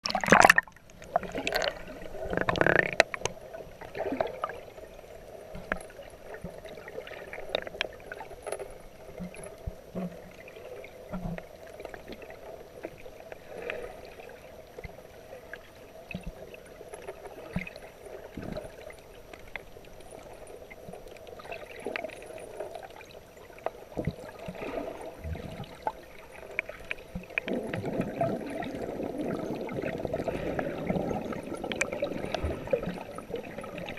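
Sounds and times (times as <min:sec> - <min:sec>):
water splashing and churning: 0:00.0 - 0:15.5, 0:16.1 - 0:33.9
muffled underwater wash: 0:00.0 - 0:33.9
small clicks and knocks: 0:02.3 - 0:03.4.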